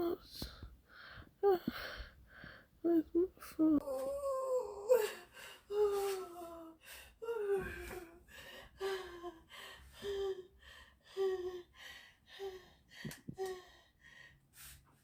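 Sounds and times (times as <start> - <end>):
woman moaning in pain: 2.9 - 8.2.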